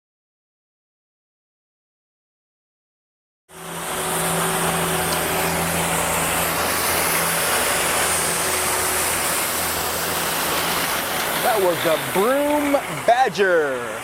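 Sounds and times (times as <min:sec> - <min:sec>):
loud broad hiss: 0:03.5 - 0:14.0
sweeper engine running: 0:03.5 - 0:14.0.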